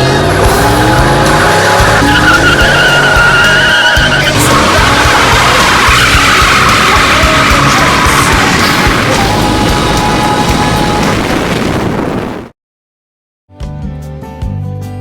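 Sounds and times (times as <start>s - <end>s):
background music: 0.0s - 11.5s, 13.5s - 15.0s
car engine revving: 0.0s - 11.5s
tyres squealing: 1.3s - 9.0s.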